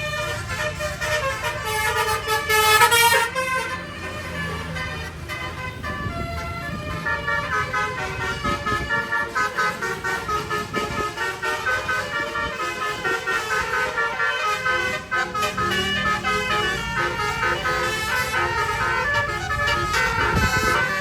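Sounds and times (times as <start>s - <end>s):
bus engine rumble: 0.0s - 21.0s
musical air horn playing tune: 0.0s - 21.0s.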